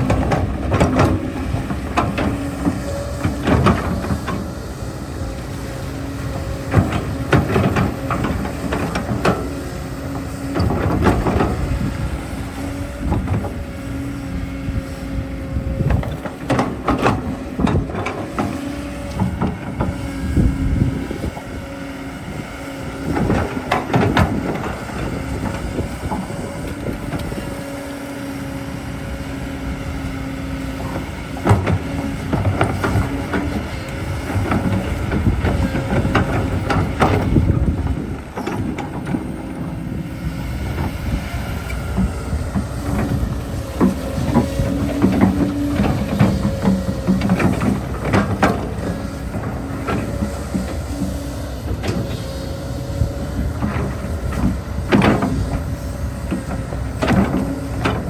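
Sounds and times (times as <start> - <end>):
excavator machine hum: 0.0 - 58.0
digging clanks and knocks: 6.2 - 13.6, 30.8 - 39.8.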